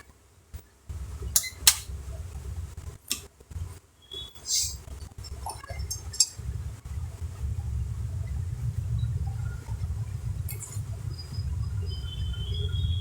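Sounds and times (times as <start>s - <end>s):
tools clicking and tapping: 1.4s - 1.9s
low rumble: 5.8s - 13.0s.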